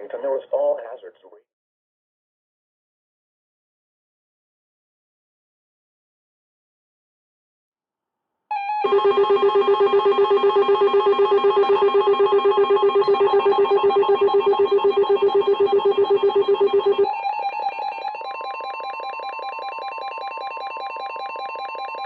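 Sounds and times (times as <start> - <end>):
electronic alert alarm pulsing: 8.5 - 22.0
steady high tone: 8.5 - 22.0.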